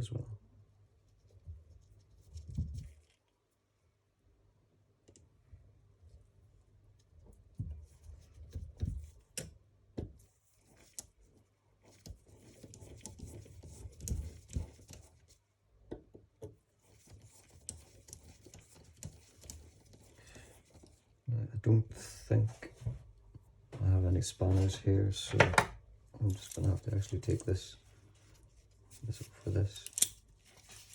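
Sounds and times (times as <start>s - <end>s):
metal parts clicking and knocking: 29.8s - 30.2s.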